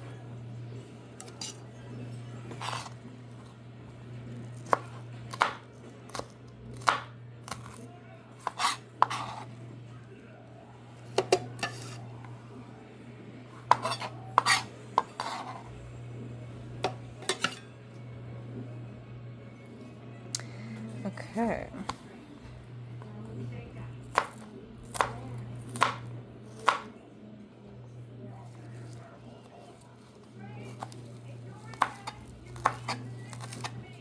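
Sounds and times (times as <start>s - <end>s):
knife chopping on cutting board: 2.5s - 3.0s, 4.5s - 9.5s, 11.1s - 12.0s, 13.6s - 15.7s, 16.8s - 17.6s, 24.1s - 26.9s, 30.7s - 33.8s.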